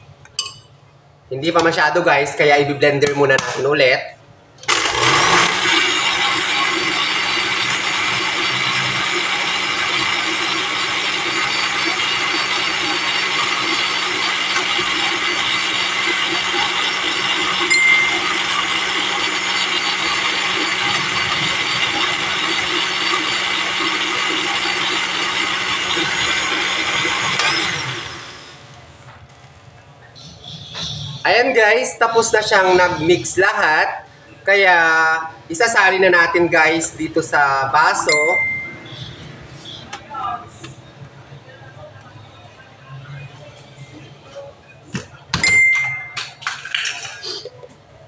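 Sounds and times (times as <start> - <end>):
electric blender running: 4.6 - 28.9.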